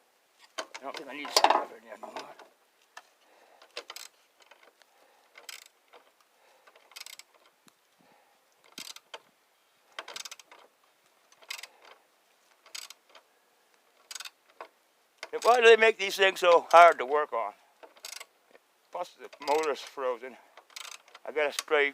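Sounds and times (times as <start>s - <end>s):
ratchet wrench clicking: 5.4s - 5.7s, 6.8s - 7.4s, 8.7s - 9.2s, 10.0s - 10.6s, 11.4s - 11.7s, 12.6s - 13.2s, 14.0s - 14.4s, 17.8s - 18.3s, 20.6s - 21.7s.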